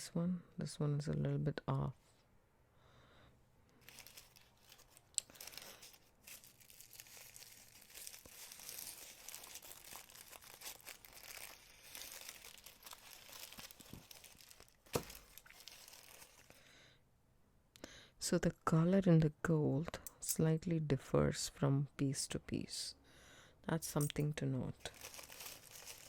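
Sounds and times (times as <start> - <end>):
packaging crinkling and rustling: 3.8 - 16.6, 24.8 - 26.0.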